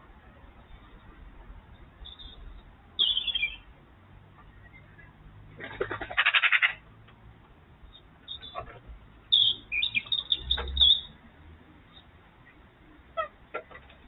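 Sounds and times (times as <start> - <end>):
birds chattering: 1.7 - 3.7, 4.4 - 6.8, 7.8 - 11.2
bird chirps and whistled calls: 2.0 - 2.4, 3.0 - 3.6, 7.9 - 8.7, 9.3 - 11.2.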